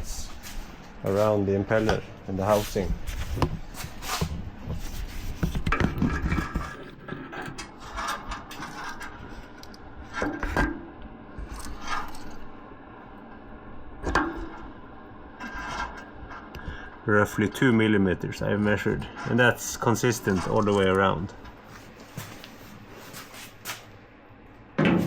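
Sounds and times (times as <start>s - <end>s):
metal parts knocking and scraping: 5.4s - 10.8s.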